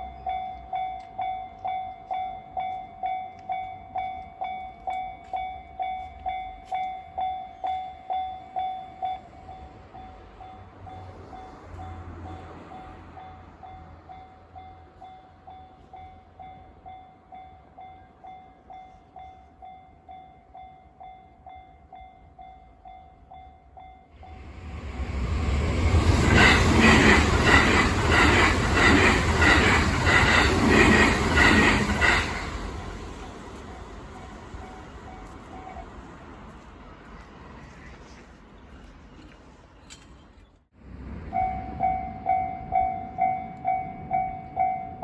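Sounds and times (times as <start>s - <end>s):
level crossing warning bell: 0.0s - 25.2s, 41.3s - 45.0s
electric train rumbling past: 0.0s - 45.0s
train wheels clattering over rail joints: 25.4s - 33.8s.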